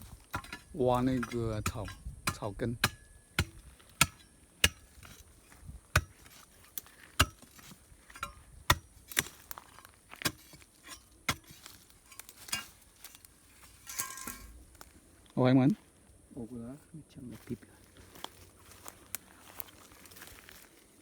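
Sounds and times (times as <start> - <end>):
metal tool striking stony soil: 0.0 - 14.6.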